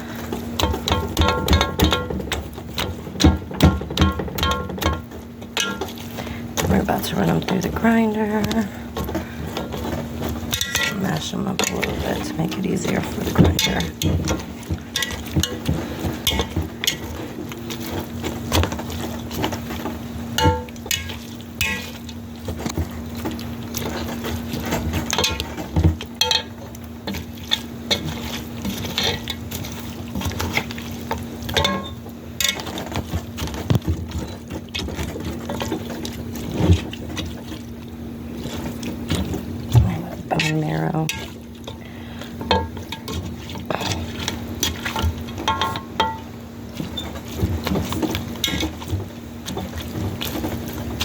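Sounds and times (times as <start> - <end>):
steady low hum: 0.0 - 51.0
wet stirring and squelching: 0.0 - 51.0.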